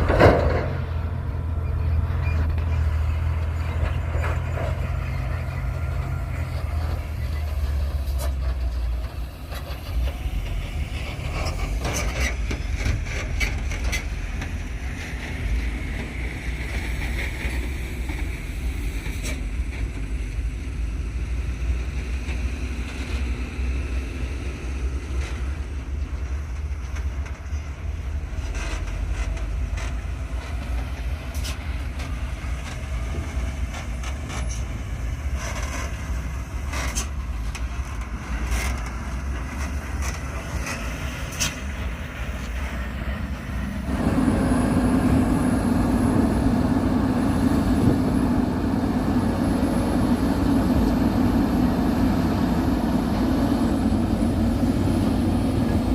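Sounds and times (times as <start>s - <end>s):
metallic clanks and knocks: 0.0s - 1.2s
diesel engine rumble: 0.0s - 55.9s.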